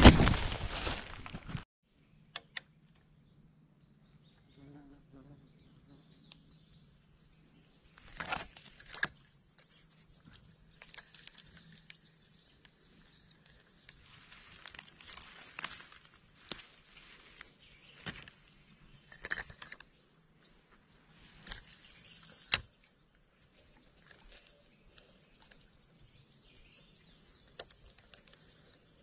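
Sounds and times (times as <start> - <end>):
footsteps rustling through brush: 0.0 - 1.6, 12.7 - 18.7
sharp clicks: 2.2 - 3.1.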